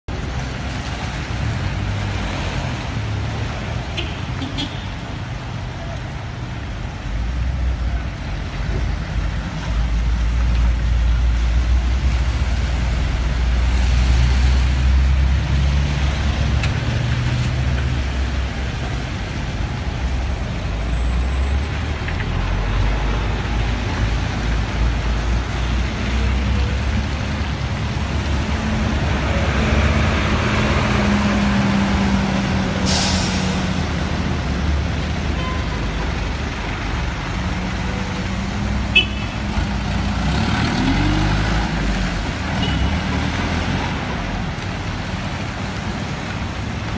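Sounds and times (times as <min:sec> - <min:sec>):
vehicle engines running: 0:00.1 - 0:46.9
rain and tyres hissing: 0:06.0 - 0:46.9
short sharp hiss: 0:32.8 - 0:33.6.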